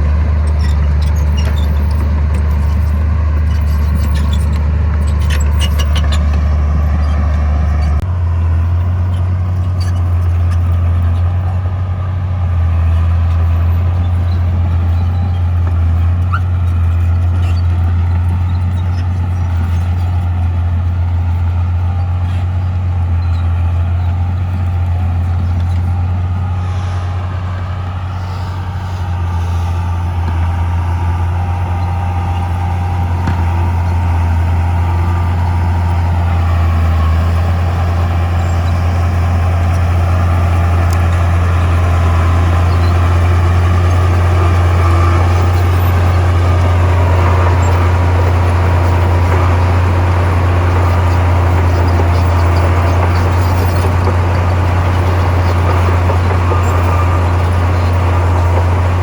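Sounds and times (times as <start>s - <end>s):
heavy diesel engine drone: 0.0s - 59.0s.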